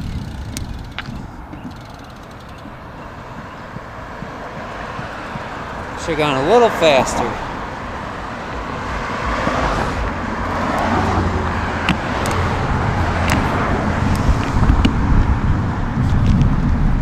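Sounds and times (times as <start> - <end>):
sharp ticks: 0.0 - 6.2
wind and road noise: 0.0 - 17.0.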